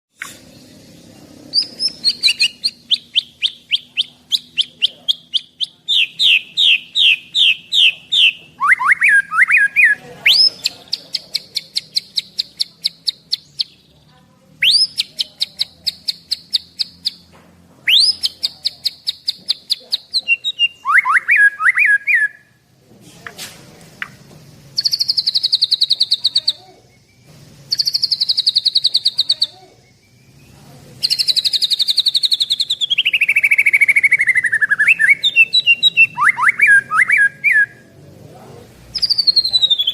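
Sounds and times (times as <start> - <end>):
songbird singing high notes: 0.2 - 14.0, 14.6 - 17.3, 17.9 - 22.6, 24.7 - 37.8, 38.9 - 39.9
buzzing bird trills: 0.2 - 17.3, 24.1 - 37.9.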